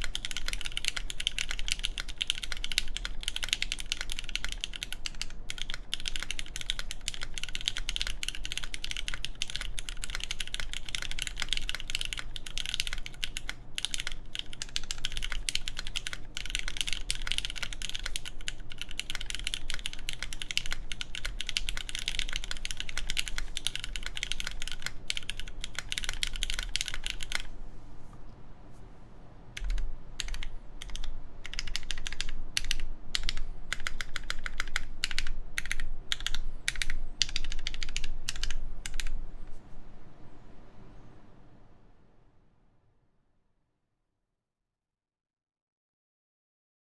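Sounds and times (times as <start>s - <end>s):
typing on mechanical keyboard: 0.0s - 27.5s, 29.6s - 39.2s.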